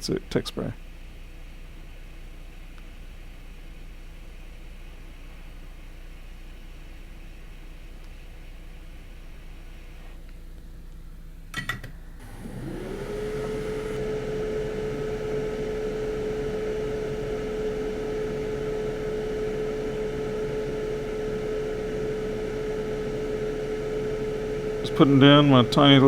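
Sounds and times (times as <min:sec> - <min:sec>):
hot air blower whine: 0:12.0 - 0:26.0.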